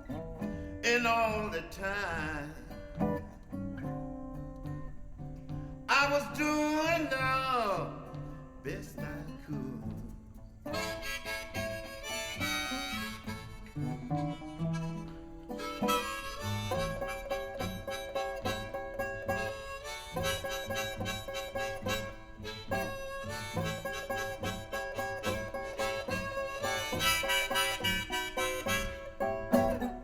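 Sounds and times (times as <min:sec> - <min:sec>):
guitar accompaniment: 0:00.0 - 0:30.0
blues harmonica solo: 0:10.6 - 0:30.0.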